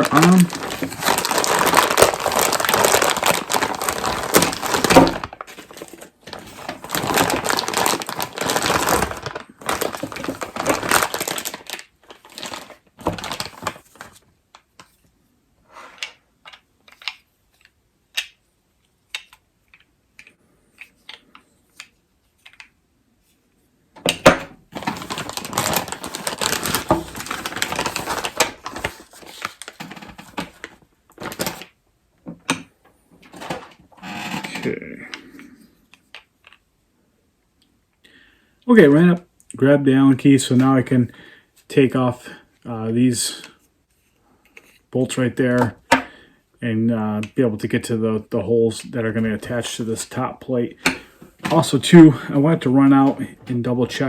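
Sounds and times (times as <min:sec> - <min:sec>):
plastic packaging crinkling: 0:00.0 - 0:14.2, 0:24.0 - 0:31.8, 0:33.2 - 0:35.5, 0:50.8 - 0:54.0.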